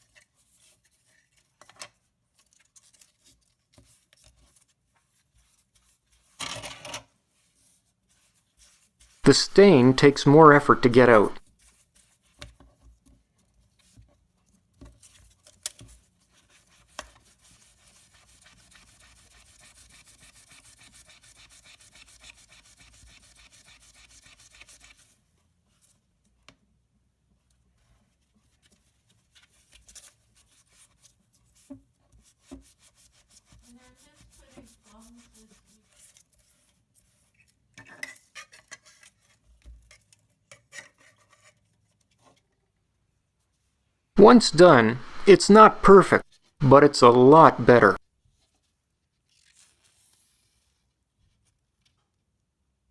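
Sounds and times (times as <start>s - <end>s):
sponge scrubbing rubber belt: 7.3s - 12.4s, 16.0s - 25.1s, 29.6s - 37.2s.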